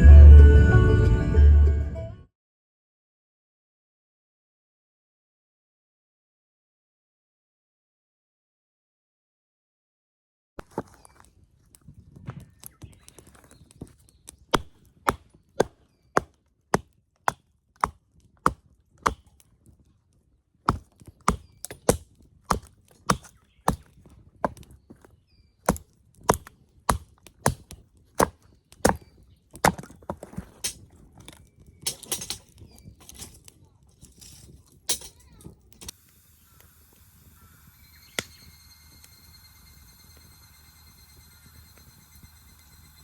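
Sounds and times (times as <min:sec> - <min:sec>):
hatchet chopping wood: 0:14.3 - 0:19.5, 0:20.6 - 0:32.1.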